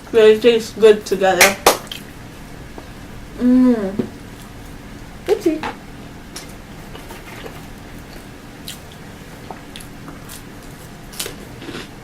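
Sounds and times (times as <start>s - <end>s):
steady low hum: 0.0s - 12.0s
person chewing food: 6.8s - 12.0s.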